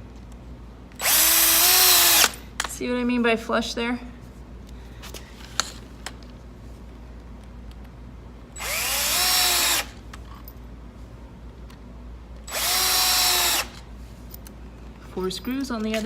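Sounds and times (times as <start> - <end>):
power drill driving screws: 1.0 - 2.4, 8.6 - 10.0, 12.5 - 13.8.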